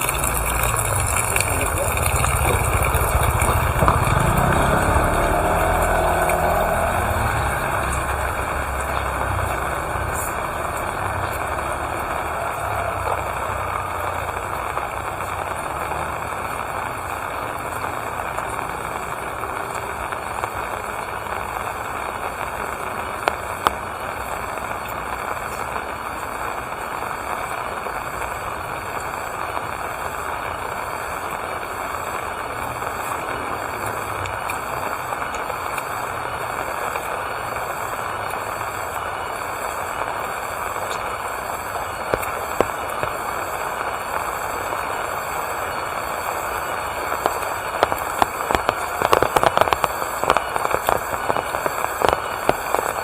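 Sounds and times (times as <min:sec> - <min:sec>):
drips tapping: 0:00.0 - 0:06.9
steady rain falling: 0:00.0 - 0:53.0.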